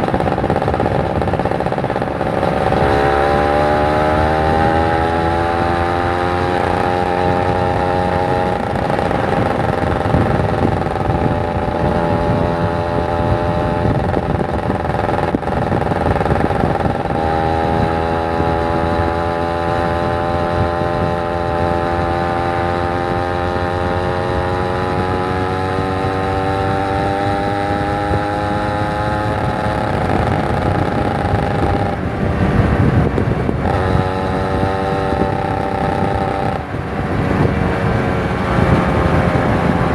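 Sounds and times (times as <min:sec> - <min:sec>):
riding noise rumble: 0:00.0 - 0:05.9, 0:29.9 - 0:39.9
motorcycle engine running: 0:00.0 - 0:39.9.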